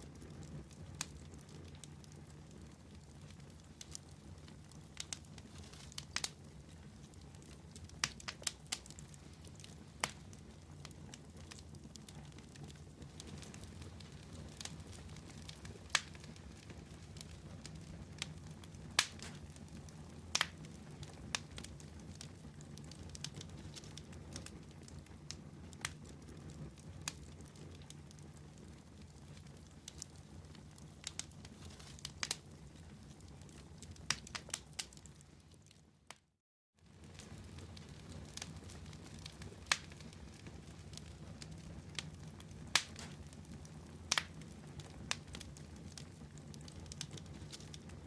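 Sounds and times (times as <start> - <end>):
campfire crackling and popping: 0.0 - 48.0.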